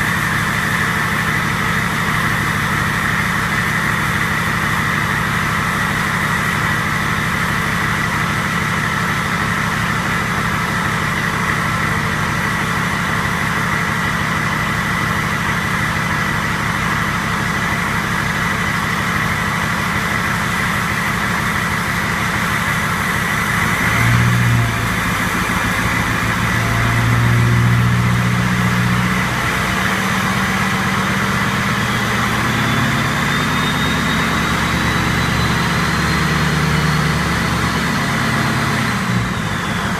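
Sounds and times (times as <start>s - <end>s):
diesel engine idling: 0.0s - 39.9s
turbo whistle: 30.2s - 37.5s, 39.2s - 39.9s.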